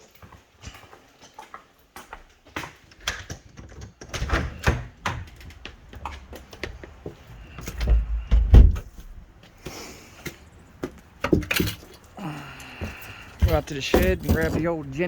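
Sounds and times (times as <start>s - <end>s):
door opening and closing: 2.9s - 6.3s, 7.6s - 9.0s
knocks and thumps: 3.2s - 9.2s, 10.8s - 11.9s, 12.8s - 14.8s
footsteps: 5.0s - 15.0s.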